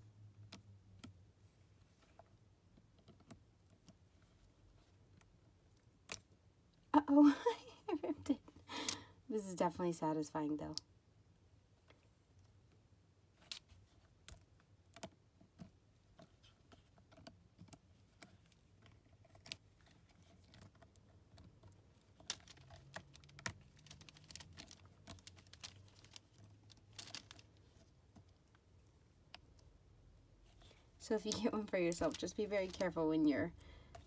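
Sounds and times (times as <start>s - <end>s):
crackling wax paper: 19.4s - 27.9s, 30.6s - 33.6s.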